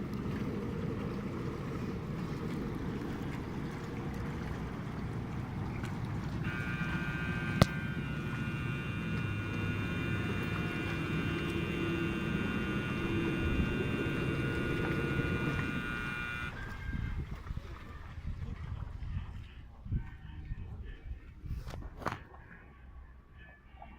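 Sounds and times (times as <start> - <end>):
boat engine rumble: 0.0 - 23.9
high-pitched multi-tone whine: 6.4 - 17.2.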